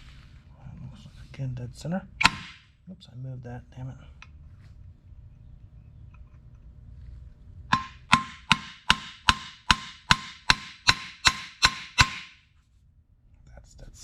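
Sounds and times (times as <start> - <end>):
hammer striking steel: 2.2 - 2.7, 7.7 - 12.4.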